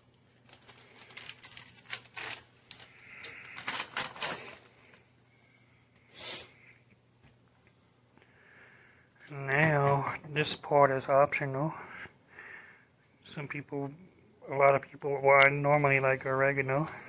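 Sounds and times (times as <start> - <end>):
short hiss: 6.1 - 6.6.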